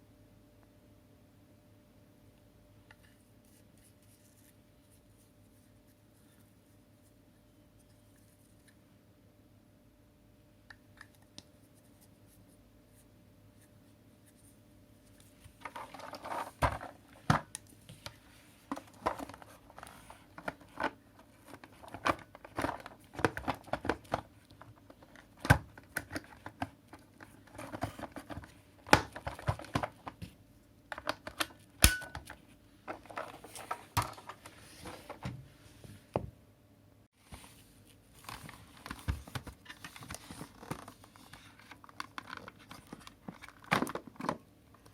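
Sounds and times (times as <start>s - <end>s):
objects handled clicking and rustling: 15.2s - 30.3s.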